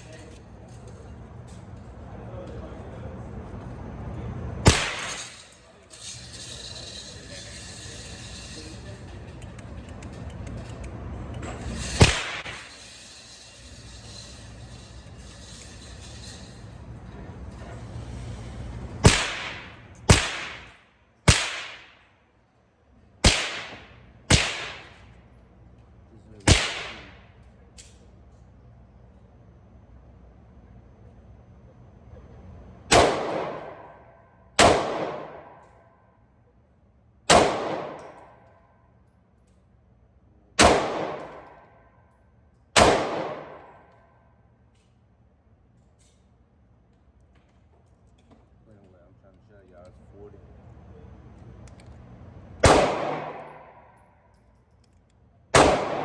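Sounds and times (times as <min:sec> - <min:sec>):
pistol shots with echo: 0:04.6 - 0:05.3, 0:12.0 - 0:12.7, 0:19.0 - 0:22.0, 0:23.2 - 0:25.0, 0:26.5 - 0:27.2, 0:32.9 - 0:34.0, 0:34.6 - 0:35.6, 0:37.3 - 0:38.4, 0:40.6 - 0:41.6, 0:42.8 - 0:43.8, 0:52.6 - 0:53.9, 0:55.5 - 0:56.0.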